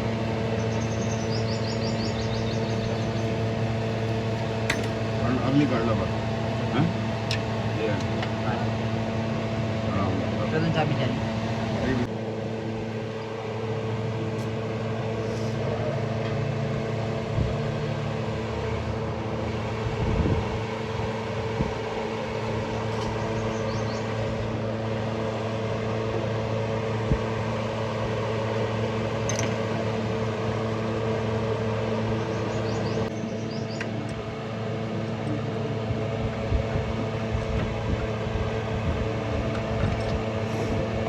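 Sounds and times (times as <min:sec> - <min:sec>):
mechanical hum: 0:00.0 - 0:41.0.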